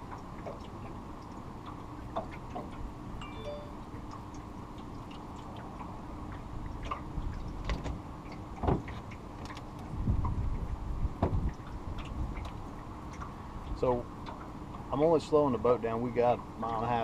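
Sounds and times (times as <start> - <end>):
low rumble of boat: 0.0 - 17.0
light clicks and ticks: 11.4 - 14.8.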